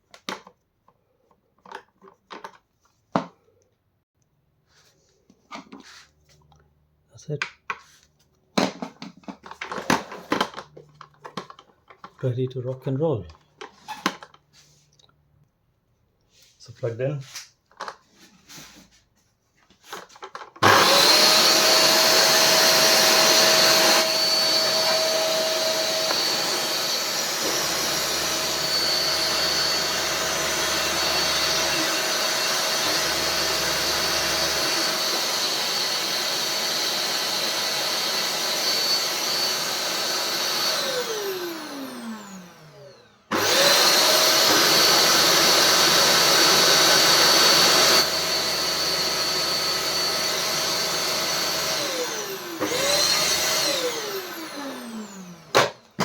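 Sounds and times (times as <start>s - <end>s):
vacuum cleaner running with whine: 20.6s - 55.8s
vacuum motor winding down: 20.6s - 55.8s.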